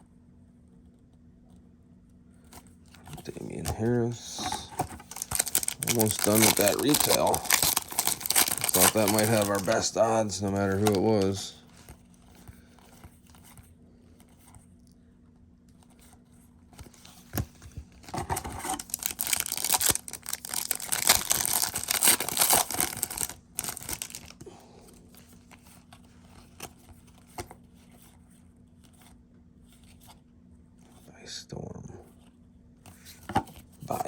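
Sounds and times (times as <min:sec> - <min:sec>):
plastic wrapper crinkling and tearing: 0:02.9 - 0:11.9, 0:16.8 - 0:24.4.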